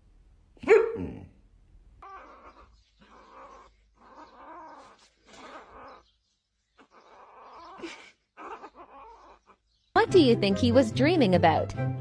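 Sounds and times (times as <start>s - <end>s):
pet animal vocalizing: 2.0s - 9.8s.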